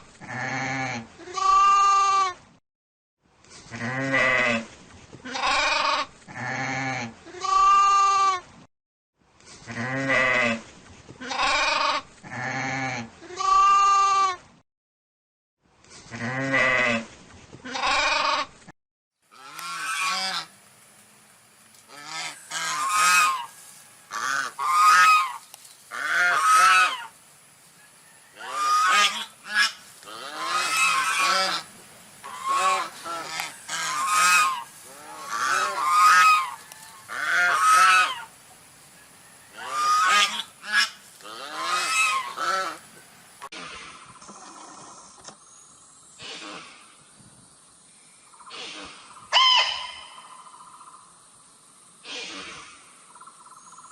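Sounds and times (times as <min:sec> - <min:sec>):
geese honking: 0:19.3 - 0:20.6, 0:21.8 - 0:43.5
goats bleating: 0:28.4 - 0:38.3.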